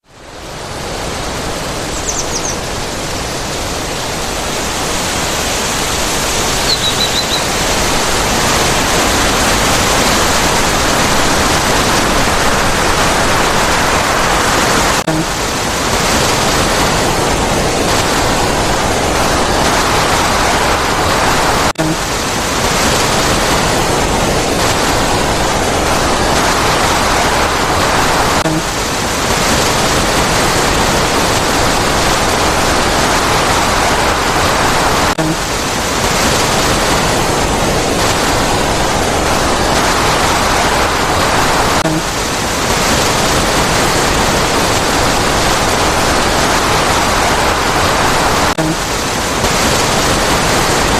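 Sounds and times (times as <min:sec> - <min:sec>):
river water rushing: 0:00.0 - 0:50.9.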